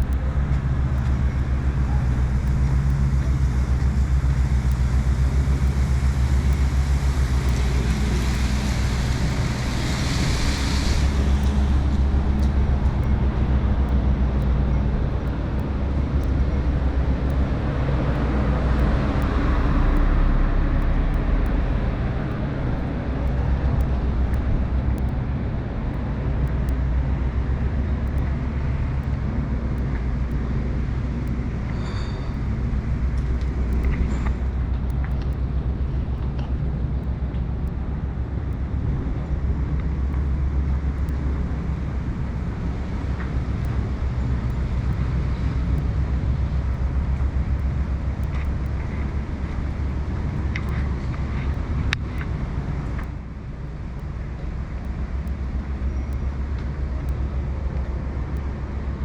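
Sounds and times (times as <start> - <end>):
low traffic rumble: 0.0 - 59.0
faint clicks: 33.1 - 37.8, 42.8 - 58.6.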